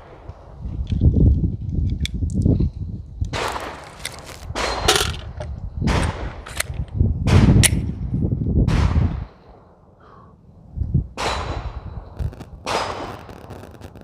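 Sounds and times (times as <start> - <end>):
pistol gunshots: 3.3 - 6.7, 11.2 - 13.4
low rumble: 10.5 - 14.0.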